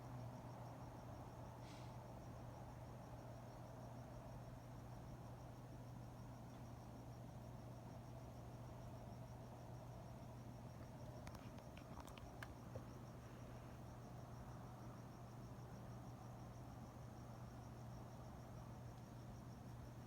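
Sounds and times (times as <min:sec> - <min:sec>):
cricket chirping: 0:00.0 - 0:20.0
faint clicks: 0:11.0 - 0:12.8.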